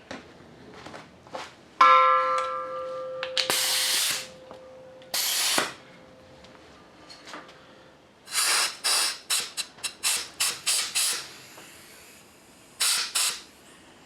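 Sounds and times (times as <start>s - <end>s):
compressed air blow gun hissing: 3.5s - 4.3s, 5.2s - 5.8s, 8.3s - 13.7s.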